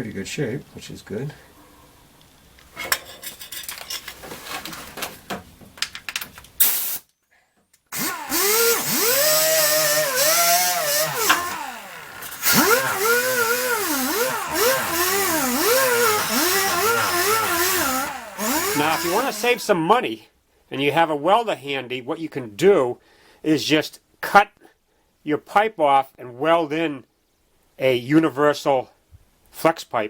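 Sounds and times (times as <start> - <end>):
scraping at metal flanges: 2.7 - 4.9
power tool grinding metal: 7.9 - 19.7.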